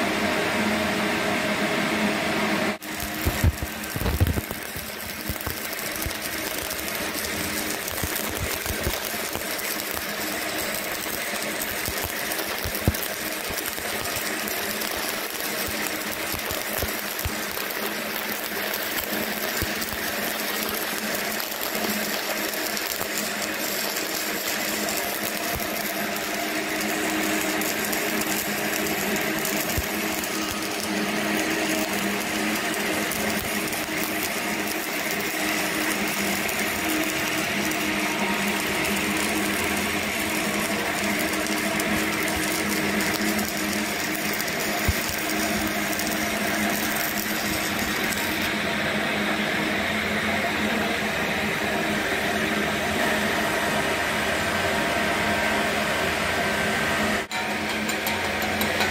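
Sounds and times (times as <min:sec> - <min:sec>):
welding arc buzzing: 0:02.0 - 0:58.9.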